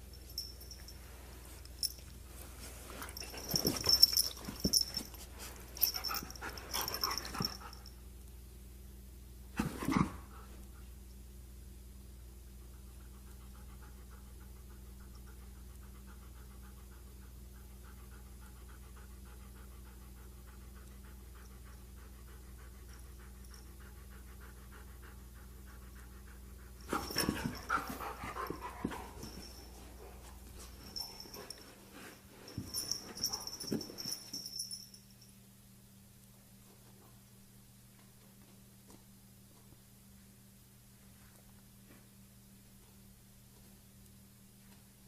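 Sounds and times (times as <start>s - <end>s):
dog panting: 12.8s - 34.2s.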